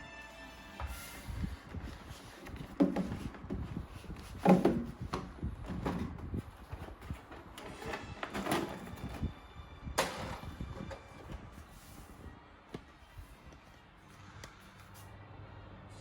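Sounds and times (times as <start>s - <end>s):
knocks and thuds from toy box: 2.6s - 6.5s.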